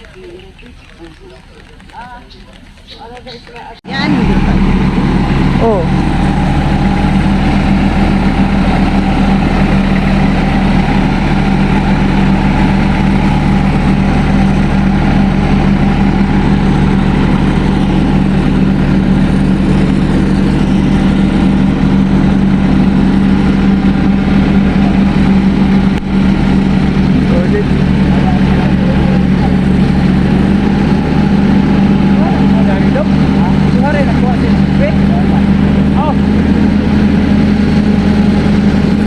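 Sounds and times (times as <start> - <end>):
engine running steadily: 0.0 - 39.0.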